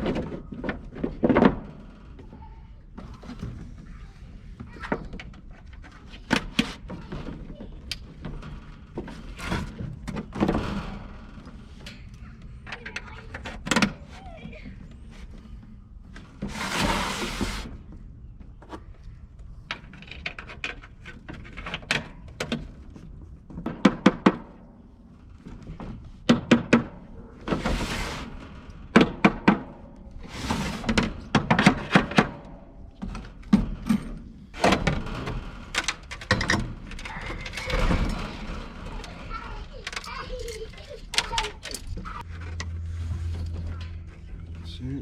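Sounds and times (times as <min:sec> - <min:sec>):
knocks and clatter of handwork: 0:19.7 - 0:44.6.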